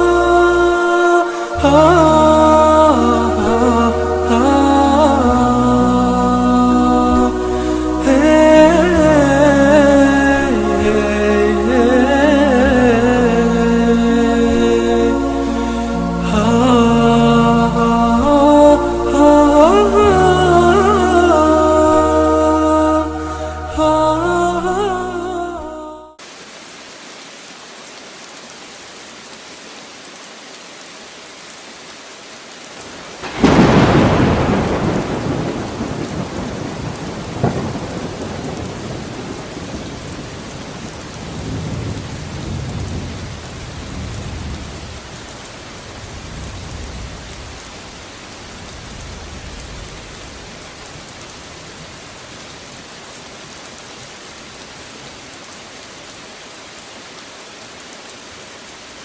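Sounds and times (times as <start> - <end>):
steady rain falling: 0.0 - 59.0
thunder clap and rumbling: 33.2 - 45.0.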